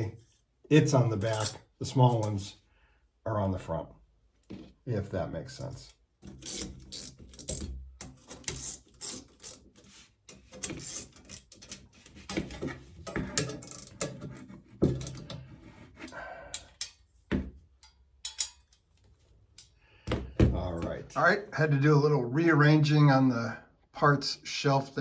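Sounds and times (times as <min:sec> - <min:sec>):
bicycle parts clinking and scraping: 0:01.1 - 0:02.5, 0:06.2 - 0:20.4.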